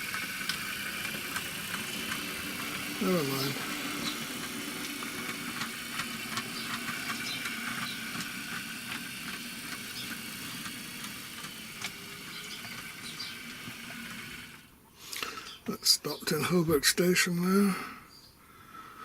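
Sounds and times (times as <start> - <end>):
electric motor hum: 0.0 - 14.7
wheels clicking over rail joints: 0.0 - 14.7.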